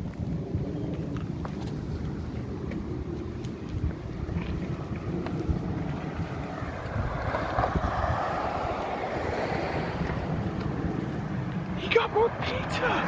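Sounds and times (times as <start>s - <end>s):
wind buffeting microphone: 0.0s - 13.0s
broad rushing noise: 5.0s - 13.0s.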